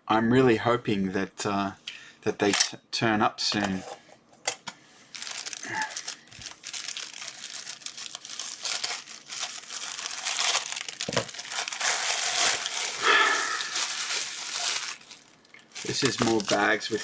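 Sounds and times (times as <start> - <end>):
plastic bags crinkling: 5.0 - 17.0.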